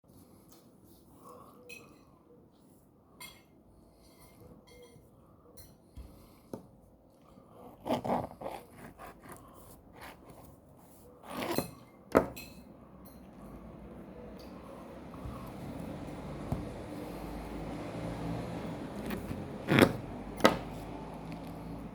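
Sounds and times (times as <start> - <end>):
knife scraping and knocking board: 18.9 - 20.9.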